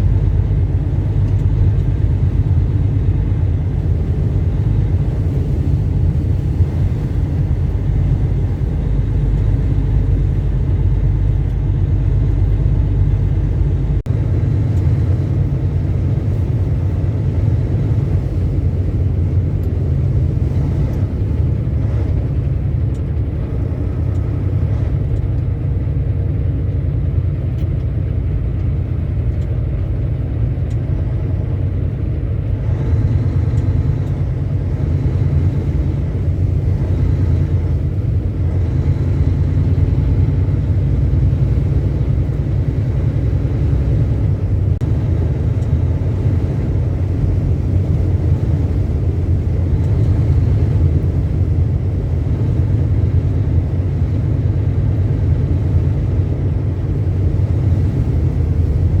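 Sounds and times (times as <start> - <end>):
road and wind noise: 0.0 - 59.0
truck engine drone in cab: 0.0 - 59.0.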